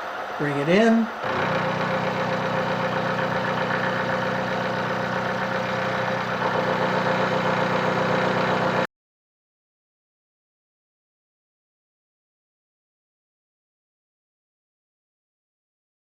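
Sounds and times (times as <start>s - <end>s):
milling machine humming: 1.1s - 8.9s.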